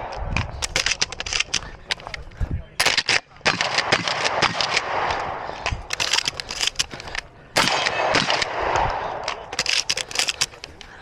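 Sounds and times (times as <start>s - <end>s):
sharp clicks and knocks: 0.1s - 3.2s, 4.7s - 7.2s, 8.8s - 11.0s
shotgun shots: 2.8s - 6.8s, 7.6s - 10.5s.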